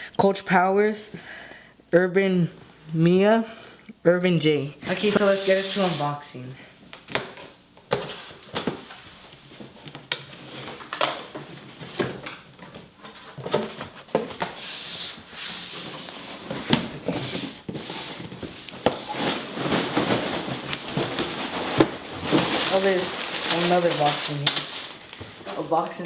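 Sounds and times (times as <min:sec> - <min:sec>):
cardboard scraping and rubbing: 0:04.9 - 0:06.1, 0:14.6 - 0:25.3.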